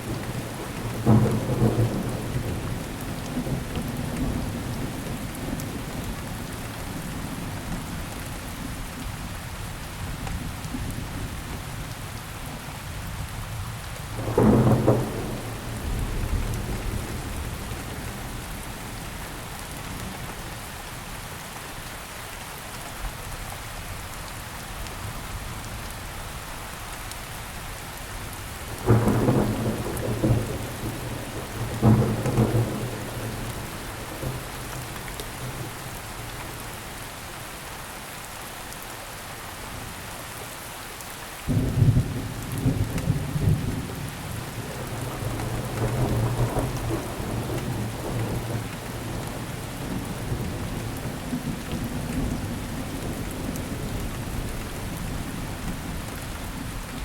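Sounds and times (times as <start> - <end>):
steady rain falling: 0.0 - 57.0
thunder rumbling: 0.1 - 5.8, 14.2 - 19.0, 28.7 - 36.8, 41.5 - 56.8.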